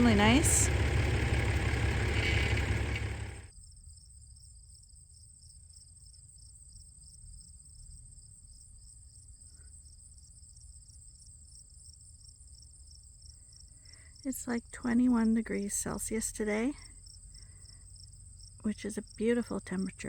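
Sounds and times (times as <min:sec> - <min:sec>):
crickets chirping: 0:00.0 - 0:03.4
faint low rumble: 0:00.0 - 0:03.4
engine-like rumble: 0:00.0 - 0:03.5.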